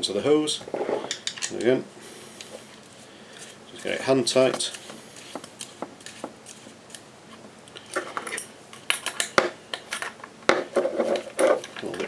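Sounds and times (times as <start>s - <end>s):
metal spanners being handled: 0.9s - 1.7s, 7.9s - 12.0s
metal parts clicking and clinking: 1.0s - 1.7s, 7.9s - 12.0s.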